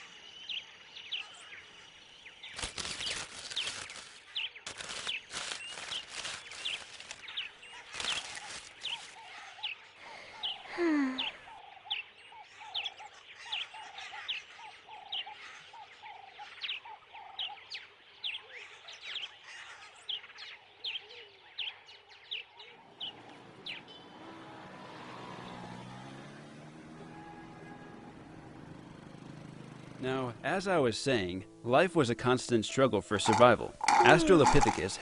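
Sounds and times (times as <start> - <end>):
birds chirping: 0.0 - 26.8, 28.2 - 35.0.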